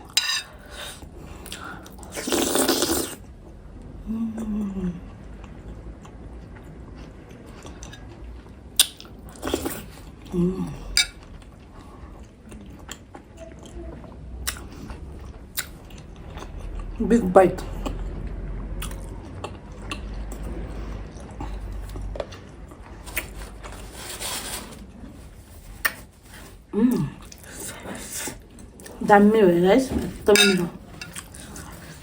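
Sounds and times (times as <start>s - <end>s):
person chewing: 0.0s - 3.2s, 5.2s - 13.8s, 14.4s - 17.0s, 18.8s - 24.0s, 30.3s - 32.0s
spoon clinking against bowl: 30.3s - 31.2s.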